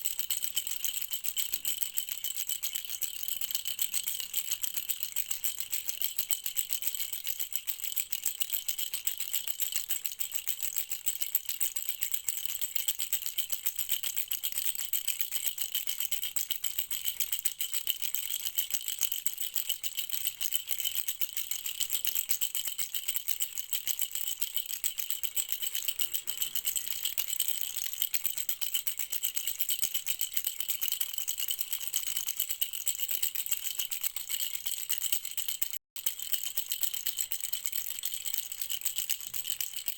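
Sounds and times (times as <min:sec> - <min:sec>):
baby rattle shaken: 0:00.0 - 0:39.9.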